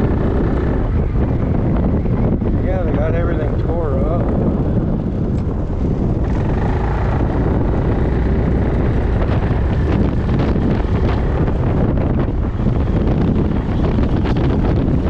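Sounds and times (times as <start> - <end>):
road noise: 0.0 - 15.0
wind buffeting microphone: 0.0 - 15.0
scooter engine: 4.8 - 15.0.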